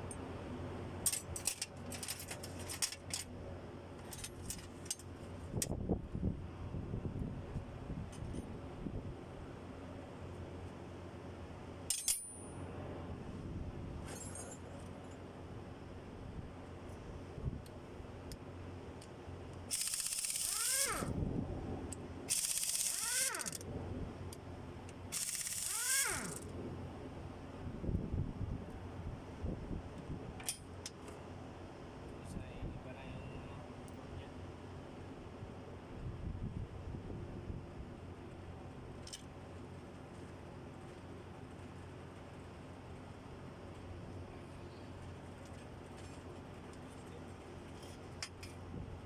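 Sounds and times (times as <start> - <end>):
low steady hum: 8.7 - 30.6
metal tools clinking: 14.1 - 14.8
air tool hissing and rattling: 19.7 - 21.1, 22.3 - 23.6, 25.1 - 26.5.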